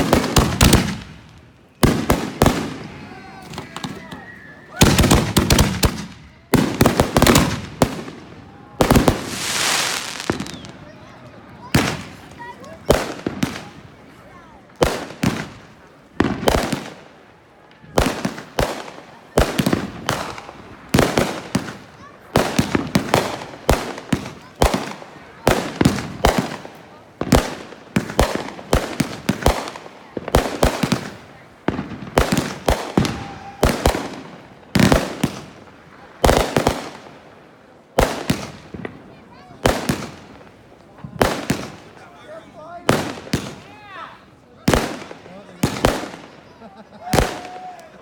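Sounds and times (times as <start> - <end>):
fireworks bangs: 0.0 - 44.0, 44.6 - 48.0
fireworks crackling: 0.0 - 48.0.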